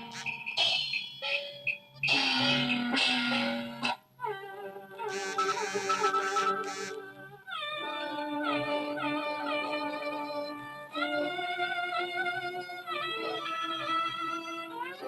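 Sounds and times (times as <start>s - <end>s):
opera music from valve radio: 0.0s - 15.0s.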